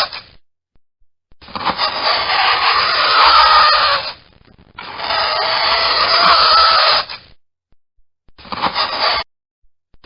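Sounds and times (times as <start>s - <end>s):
fingernails scratching a chalkboard: 1.5s - 4.1s, 4.8s - 7.2s, 8.5s - 9.3s.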